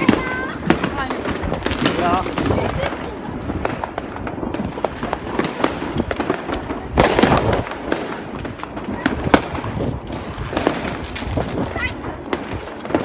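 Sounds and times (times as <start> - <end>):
firecracker crackling burst: 0.0 - 13.0
firecrackers bangs and pops: 0.0 - 13.0.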